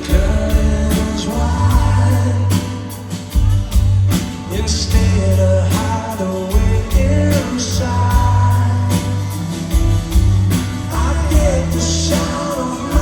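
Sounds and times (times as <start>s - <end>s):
lead singer singing: 0.0s - 3.2s, 4.4s - 9.4s, 10.8s - 13.0s
rock band playing: 0.0s - 13.0s.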